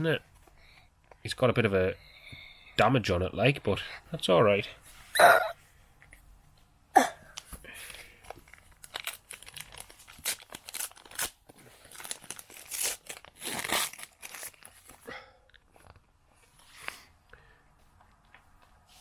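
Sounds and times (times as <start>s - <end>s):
foil wrappers crinkling and tearing: 8.3s - 15.0s.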